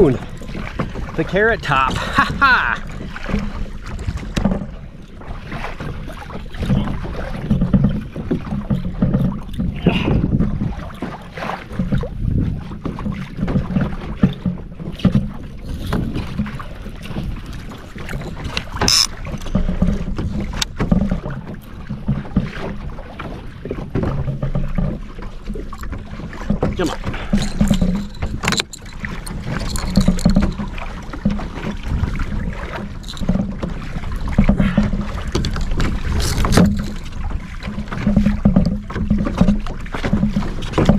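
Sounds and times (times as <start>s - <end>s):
wind on microphone: 0.0s - 14.4s, 15.0s - 23.2s, 25.8s - 40.9s
water lapping against kayak hull: 0.0s - 40.9s
gear clicking: 18.1s - 19.5s, 27.4s - 30.8s.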